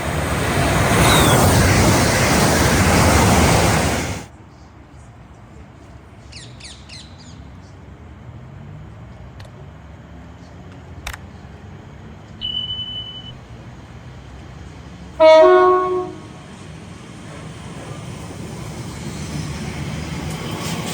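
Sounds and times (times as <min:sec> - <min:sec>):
two-tone train horn: 0:15.2 - 0:16.4.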